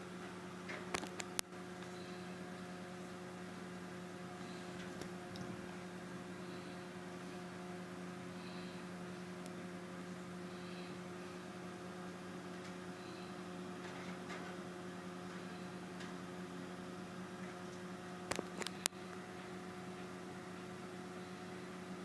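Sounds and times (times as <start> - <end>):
low electrical hum: 0.0 - 22.0.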